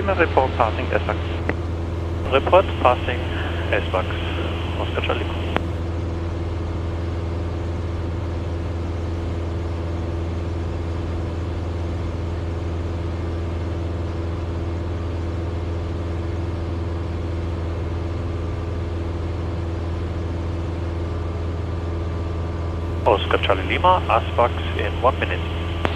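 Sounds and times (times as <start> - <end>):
aircraft propeller engine droning: 0.0 - 5.8, 22.9 - 25.9.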